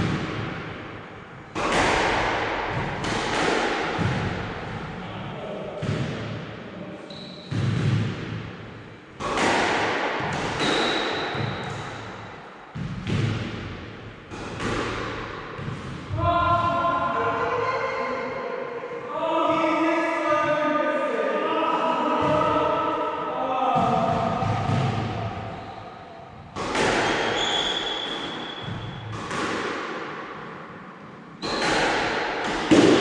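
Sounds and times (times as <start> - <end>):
squash ball hits: 0.0 - 5.0, 5.8 - 6.5, 7.4 - 16.3, 23.8 - 25.6, 26.4 - 33.0.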